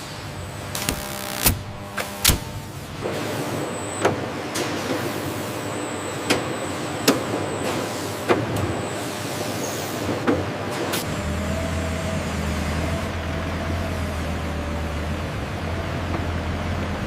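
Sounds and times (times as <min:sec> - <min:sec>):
thin high whine: 0:00.1 - 0:07.8
sawmill machinery running: 0:11.0 - 0:17.0.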